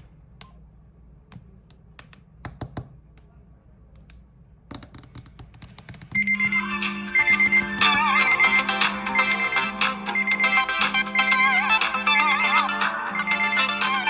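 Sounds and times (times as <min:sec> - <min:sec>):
taps and clicks: 0:01.3 - 0:03.3, 0:04.0 - 0:10.1
phone ringtone: 0:06.2 - 0:14.0.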